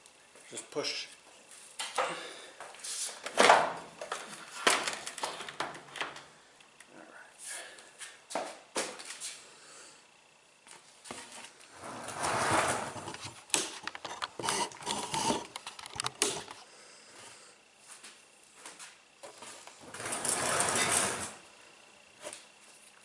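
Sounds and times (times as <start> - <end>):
metal and plastic parts clicking: 13.1 - 16.6.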